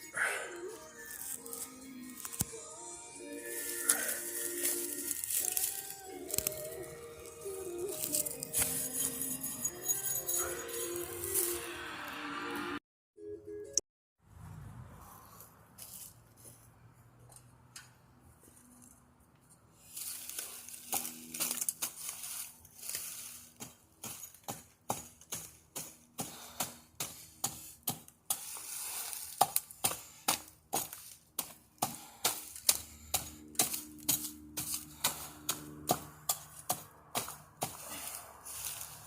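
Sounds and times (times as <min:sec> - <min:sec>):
crackling rustle of leaves: 0:03.5 - 0:08.6, 0:19.8 - 0:24.0, 0:37.8 - 0:39.0
blade chopping palm: 0:29.1 - 0:37.9.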